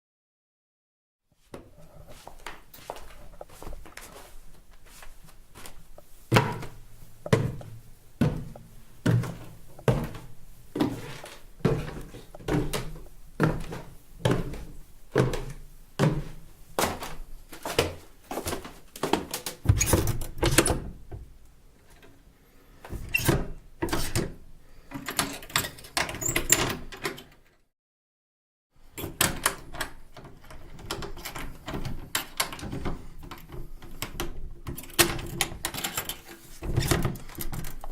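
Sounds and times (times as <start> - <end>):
slipper footsteps on wooden stairs: 1.4 - 21.3.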